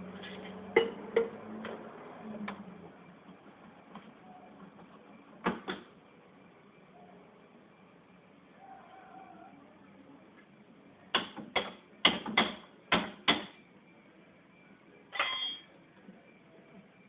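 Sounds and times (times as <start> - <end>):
metallic clank with ring: 15.1 - 15.7.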